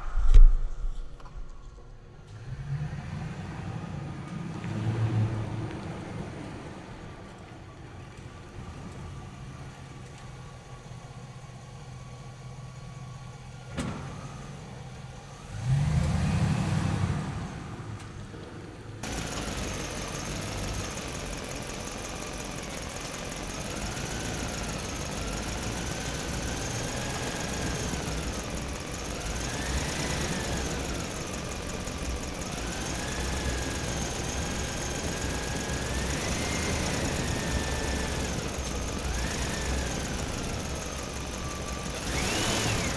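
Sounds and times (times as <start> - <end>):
loud low thump: 0.0 - 2.3
small electric motors whining: 19.0 - 42.9.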